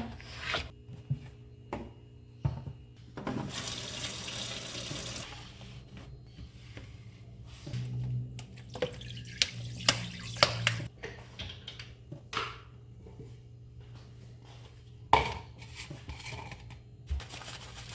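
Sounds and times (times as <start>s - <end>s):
tap water running into sink: 3.3s - 5.2s, 8.6s - 10.9s.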